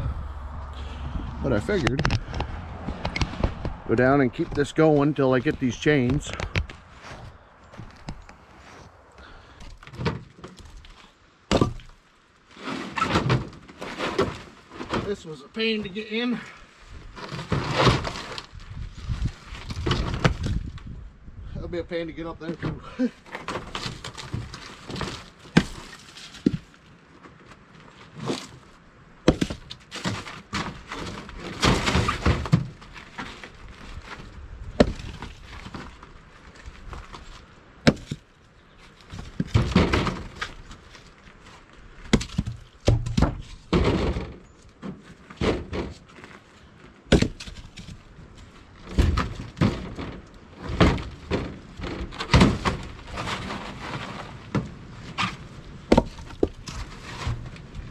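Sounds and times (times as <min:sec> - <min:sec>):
firewood knocking and clattering: 0:01.7 - 0:08.4, 0:09.6 - 0:12.0, 0:19.1 - 0:20.9, 0:29.2 - 0:46.4, 0:47.0 - 0:57.9.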